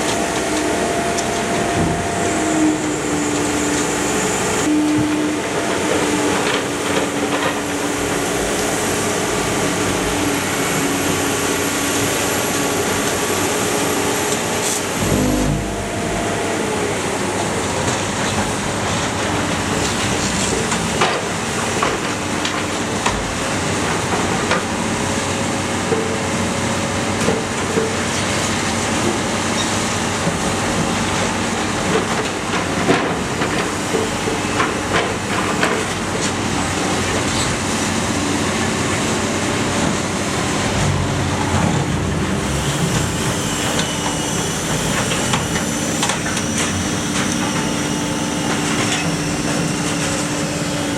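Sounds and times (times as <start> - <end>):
machinery drone: 0.0 - 22.2, 36.5 - 50.9.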